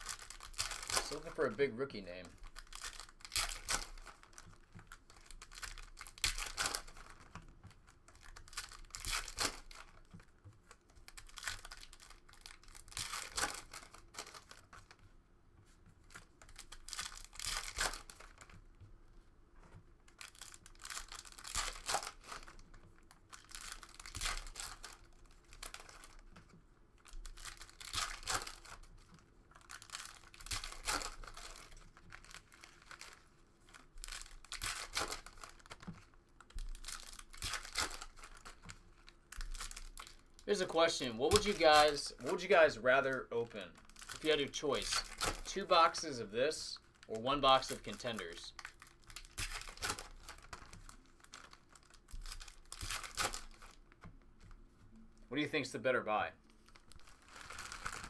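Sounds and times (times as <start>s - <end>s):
cards being handled: 0.0s - 15.0s, 39.4s - 54.6s
wrappers crinkling and tearing: 0.0s - 15.0s, 15.6s - 18.7s, 19.9s - 54.6s, 56.4s - 58.0s.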